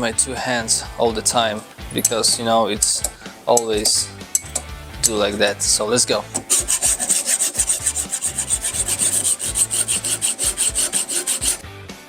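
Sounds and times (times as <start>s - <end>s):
sharpening stone scraping steel blade: 4.3s - 5.6s, 6.3s - 11.6s.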